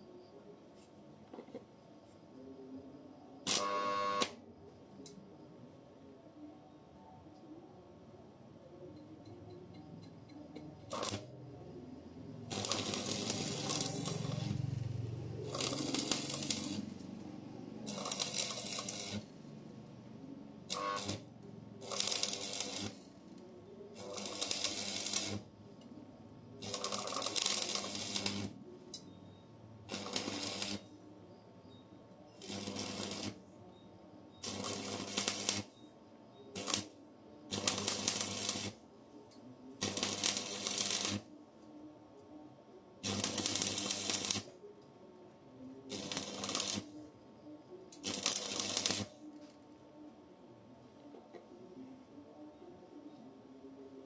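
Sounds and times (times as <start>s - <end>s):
crackling welding arc: 3.5s - 4.3s, 10.9s - 11.3s, 12.4s - 17.2s, 17.8s - 19.4s, 20.7s - 23.1s, 24.0s - 25.5s, 26.6s - 28.6s, 29.9s - 30.9s, 32.4s - 33.4s, 34.4s - 35.8s, 36.6s - 38.8s, 39.8s - 41.3s, 43.0s - 44.5s, 45.9s - 47.0s, 48.0s - 49.2s.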